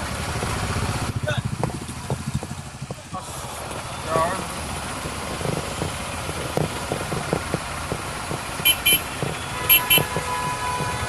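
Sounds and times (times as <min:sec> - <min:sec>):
street noise: 0:00.0 - 0:11.0
scattered knocks: 0:01.4 - 0:03.1, 0:04.7 - 0:11.0
vehicle horn double toots: 0:08.6 - 0:11.0.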